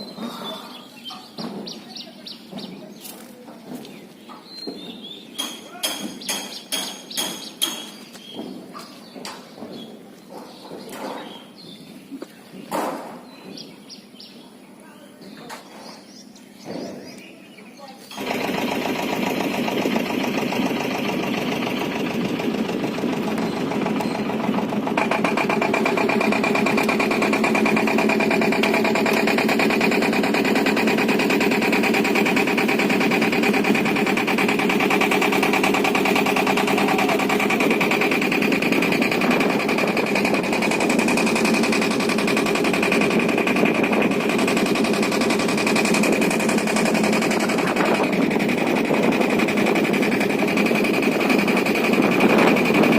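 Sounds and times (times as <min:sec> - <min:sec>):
small engine running: 0:18.1 - 0:52.9.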